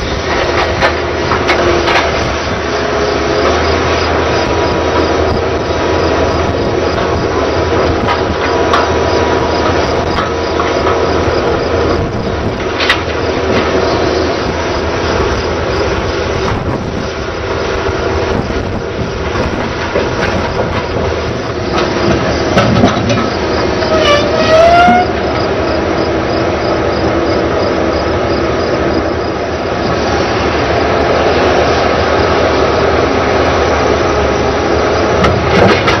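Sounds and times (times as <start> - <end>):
train diesel drone: 0.0 - 36.0
rising squeal: 20.3 - 25.5.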